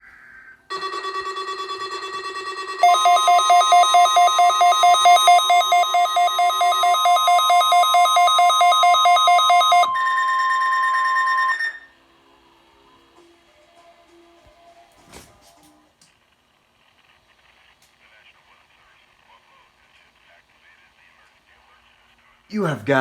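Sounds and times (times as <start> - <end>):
fast two-pitch beeping: 0.7 - 11.8
pulsing beep: 0.7 - 11.8
data noise buzz: 2.8 - 10.0.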